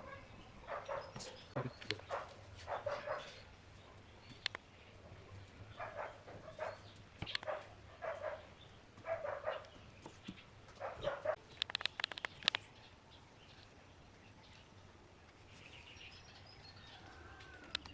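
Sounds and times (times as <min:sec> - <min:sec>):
dog barking: 0:00.7 - 0:01.4, 0:02.1 - 0:03.4, 0:05.8 - 0:09.7, 0:10.8 - 0:11.4.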